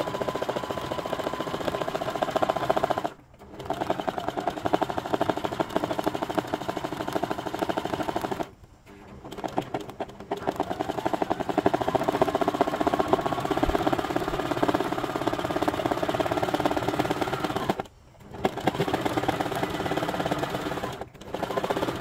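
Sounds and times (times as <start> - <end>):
sewing machine stitching: 0.0 - 22.0.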